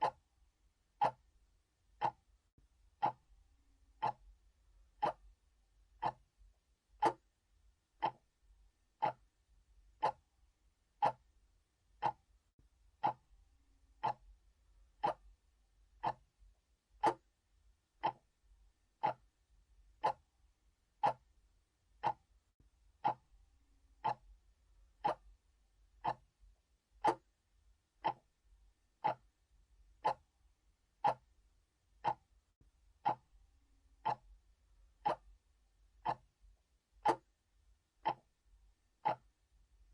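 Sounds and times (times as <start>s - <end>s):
analog clock ticking: 0.0s - 0.2s, 1.0s - 1.2s, 2.0s - 2.3s, 3.0s - 3.3s, 4.0s - 5.4s, 6.0s - 6.3s, 7.0s - 7.4s, 8.0s - 8.3s, 9.0s - 10.3s, 11.0s - 11.4s, 12.0s - 12.3s, 13.0s - 13.3s, 14.0s - 14.4s, 15.0s - 15.4s, 16.0s - 16.3s, 17.0s - 17.3s, 18.0s - 18.3s, 19.0s - 19.4s, 20.0s - 20.3s, 21.0s - 21.3s, 22.0s - 22.3s, 23.0s - 23.4s, 24.0s - 24.4s, 25.0s - 25.4s, 26.0s - 26.4s, 27.0s - 27.4s, 28.0s - 28.4s, 29.0s - 29.4s, 30.0s - 30.3s, 31.0s - 31.4s, 32.0s - 32.3s, 33.0s - 33.4s, 34.0s - 35.4s, 36.0s - 37.4s, 38.0s - 39.5s.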